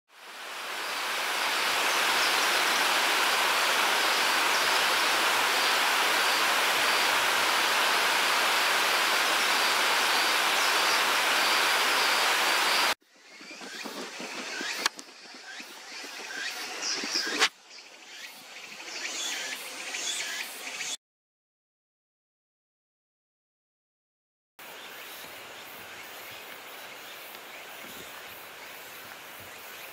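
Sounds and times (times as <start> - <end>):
outdoor ambience: 0.1 - 21.0
rushing water: 0.2 - 13.0.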